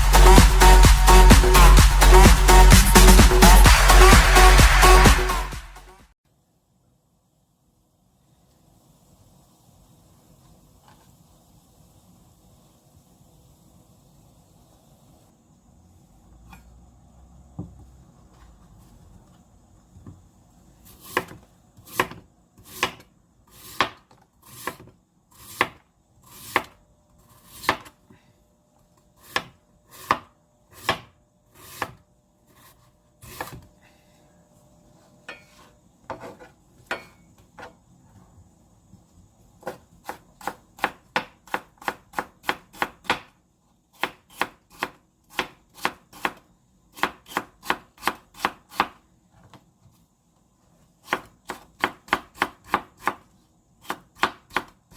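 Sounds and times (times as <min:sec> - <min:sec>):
knife chopping on cutting board: 0:20.9 - 0:26.8, 0:27.4 - 0:28.0, 0:29.2 - 0:32.0, 0:32.6 - 0:33.6, 0:39.6 - 0:43.3, 0:44.0 - 0:46.4, 0:47.0 - 0:49.0, 0:51.0 - 0:53.2, 0:53.8 - 0:54.7.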